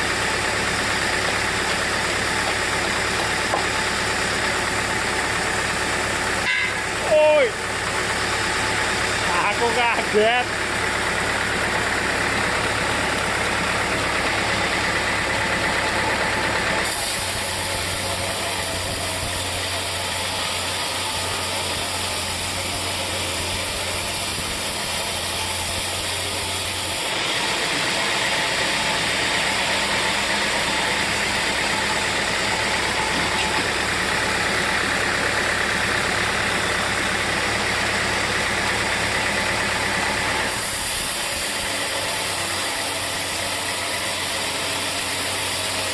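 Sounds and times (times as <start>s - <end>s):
sawmill machinery running: 0.0s - 45.9s.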